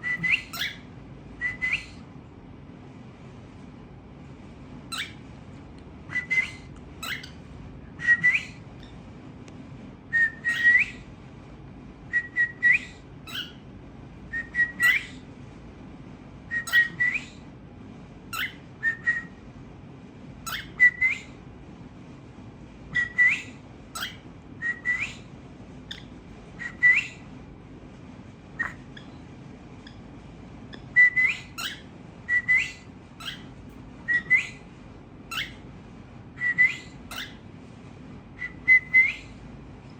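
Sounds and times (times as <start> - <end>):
cockatiels whistling: 0.0 - 2.0, 4.9 - 5.2, 6.1 - 7.4, 8.0 - 8.9, 10.2 - 11.0, 12.2 - 13.6, 14.3 - 15.2, 16.5 - 17.4, 18.4 - 19.4, 20.4 - 21.4, 23.0 - 25.3, 25.9 - 27.2, 28.6 - 29.2, 30.7 - 34.6, 35.3 - 35.6, 36.4 - 37.4, 38.4 - 39.3
steady low hum: 0.0 - 39.9.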